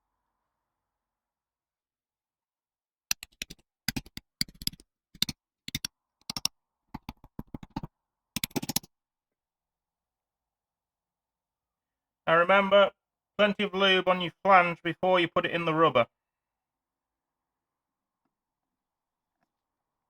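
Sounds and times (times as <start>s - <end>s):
hand tool clicking and tapping: 3.1s - 8.9s.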